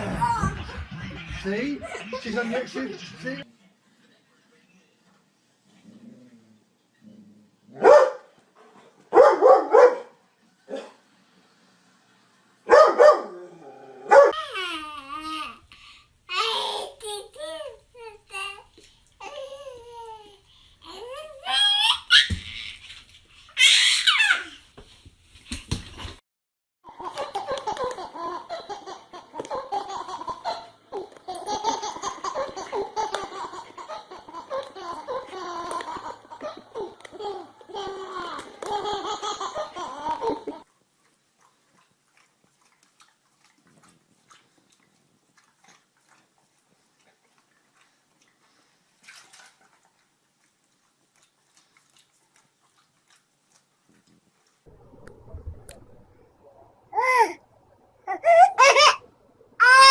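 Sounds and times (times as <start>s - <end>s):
baby giggling: 0.0s - 3.4s, 58.1s - 59.0s.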